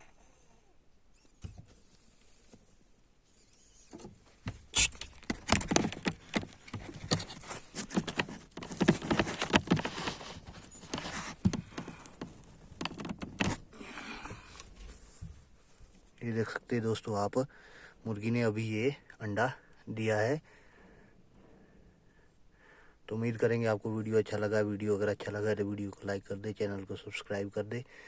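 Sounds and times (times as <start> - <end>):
hen rustling in nest: 1.4 - 16.2.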